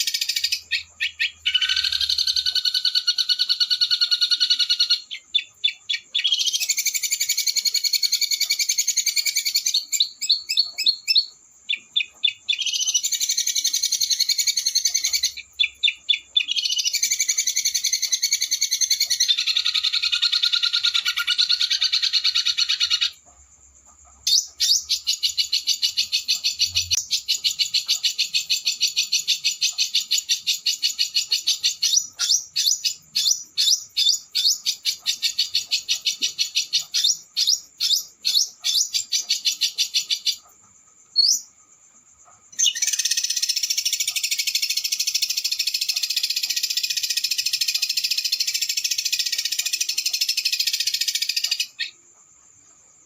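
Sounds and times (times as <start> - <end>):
songbird trilling: 0.0 - 23.3, 24.2 - 41.5, 42.5 - 52.0.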